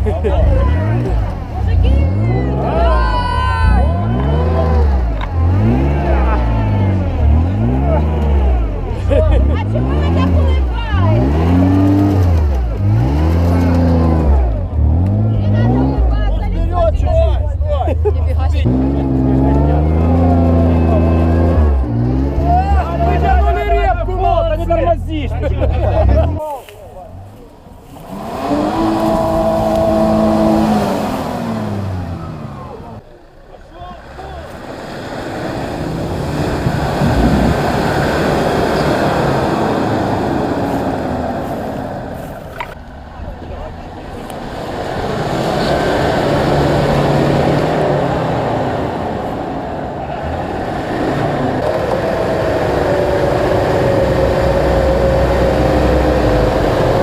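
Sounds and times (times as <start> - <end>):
car engine revving: 0.0 - 26.4, 27.7 - 57.0
noisy wash: 27.6 - 57.0.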